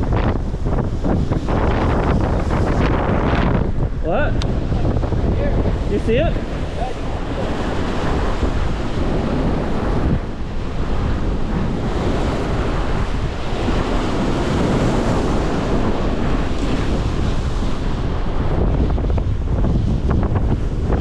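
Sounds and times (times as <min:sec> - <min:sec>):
heavy low rumble: 0:00.0 - 0:16.3
waves splashing: 0:00.0 - 0:21.0
wind buffeting microphone: 0:00.0 - 0:21.0.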